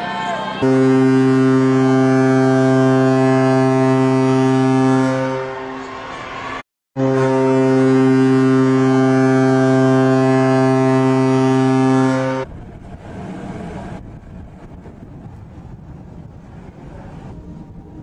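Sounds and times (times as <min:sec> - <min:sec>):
ship's horn blast: 0:00.0 - 0:12.6.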